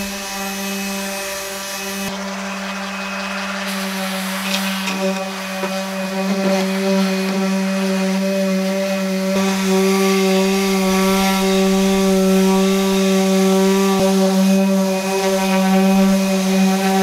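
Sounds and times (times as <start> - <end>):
electric sander on wood: 0.0 - 17.0.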